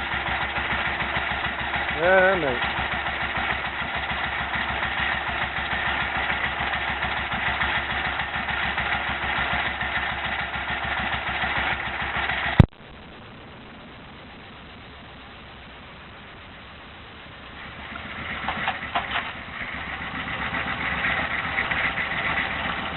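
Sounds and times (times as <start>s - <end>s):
engine running with fast pulse: 0.0s - 22.9s
faint steady hiss: 12.7s - 22.8s.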